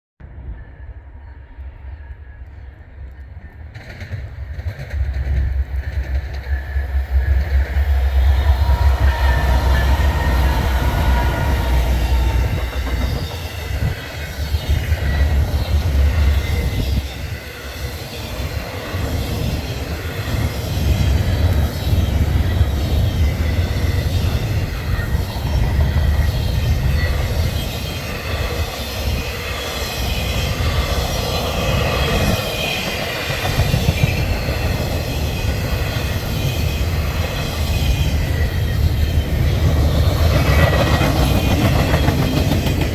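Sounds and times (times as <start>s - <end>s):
freight train rumbling past: 0.2s - 42.9s
faint wheel squeal: 7.3s - 14.2s.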